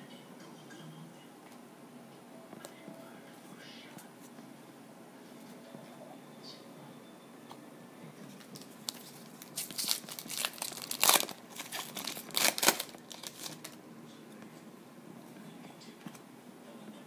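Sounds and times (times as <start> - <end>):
wrapper tearing and crinkling: 8.6 - 13.8.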